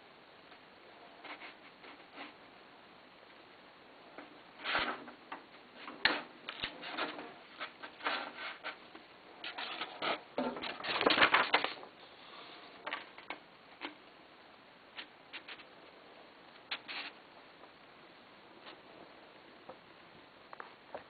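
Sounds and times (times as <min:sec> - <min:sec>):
paper rustling: 0:09.4 - 0:11.9.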